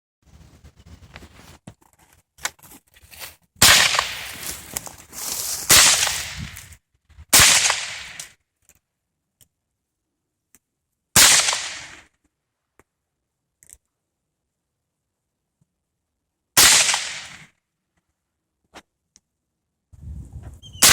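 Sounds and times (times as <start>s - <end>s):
rifle shots with echo: 3.6s - 4.4s, 5.7s - 6.5s, 7.4s - 8.3s, 11.2s - 12.0s, 16.6s - 17.4s.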